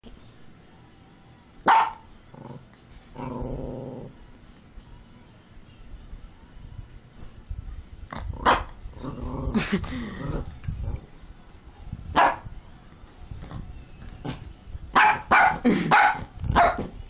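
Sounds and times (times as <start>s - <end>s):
dog barking and growling: 1.7s - 4.2s, 8.2s - 10.5s, 14.2s - 16.9s.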